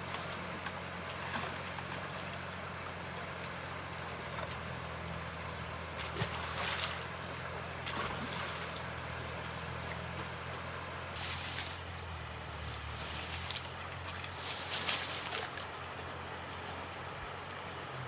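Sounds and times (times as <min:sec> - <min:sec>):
small boat engine running: 0:00.0 - 0:18.0
water splashes: 0:06.0 - 0:17.9.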